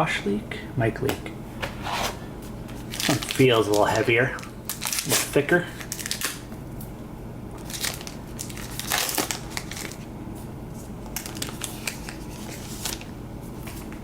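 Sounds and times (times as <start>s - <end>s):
plastic wrapper crinkling: 2.8s - 6.5s, 7.6s - 10.1s, 11.0s - 14.0s.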